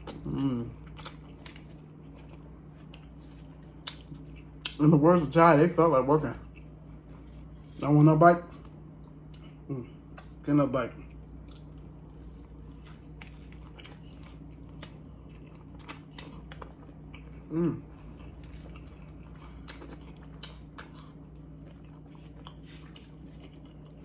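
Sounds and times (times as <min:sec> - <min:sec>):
chewing food: 0:00.0 - 0:05.0, 0:06.3 - 0:24.0
person humming: 0:17.5 - 0:17.9.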